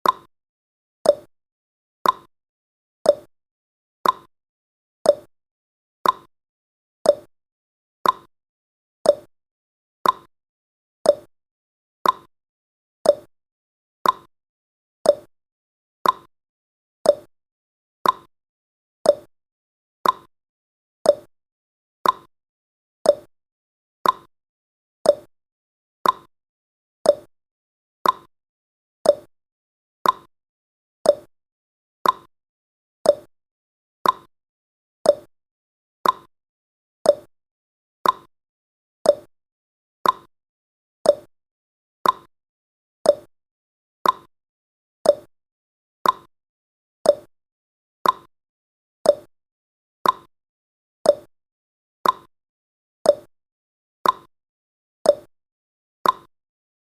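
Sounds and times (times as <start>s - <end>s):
countdown timer ticking: 33.1s - 33.3s, 39.1s - 39.3s, 41.1s - 41.3s, 43.1s - 43.3s, 45.1s - 45.3s, 47.1s - 47.3s.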